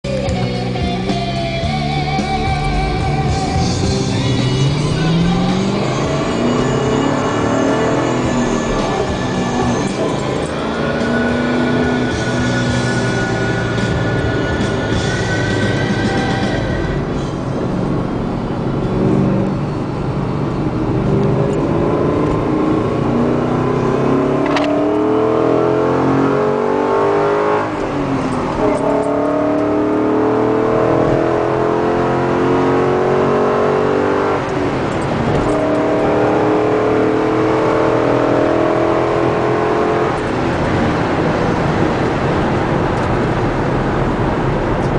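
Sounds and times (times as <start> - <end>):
car engine accelerating: 0.1 - 44.9.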